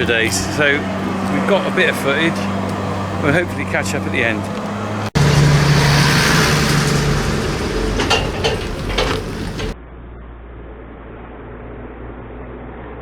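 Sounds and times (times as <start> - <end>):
harvest machinery running: 0.0 - 9.8
sharp knocks: 5.2 - 9.8.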